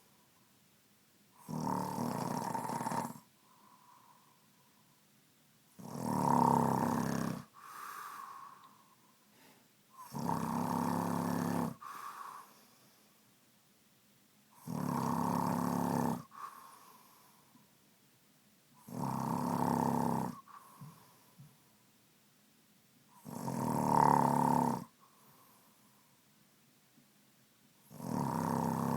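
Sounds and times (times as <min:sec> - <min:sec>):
man snoring: 0:01.4 - 0:03.2, 0:05.8 - 0:07.5, 0:10.0 - 0:11.8, 0:14.6 - 0:16.3, 0:18.8 - 0:20.9, 0:23.2 - 0:24.9, 0:27.9 - 0:28.9.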